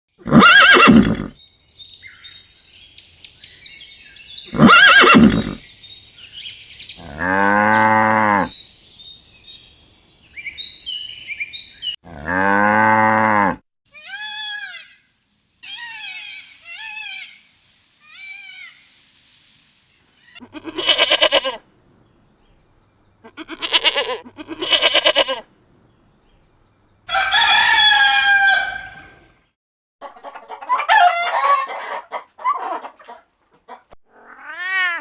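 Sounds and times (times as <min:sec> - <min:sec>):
loud harsh animal calls: 0:00.2 - 0:01.4, 0:04.5 - 0:05.6, 0:07.0 - 0:08.5, 0:20.4 - 0:21.6, 0:23.2 - 0:25.4
small birds chirping: 0:00.2 - 0:12.0
cow mooing: 0:04.5 - 0:05.6, 0:07.0 - 0:08.5, 0:12.1 - 0:13.6.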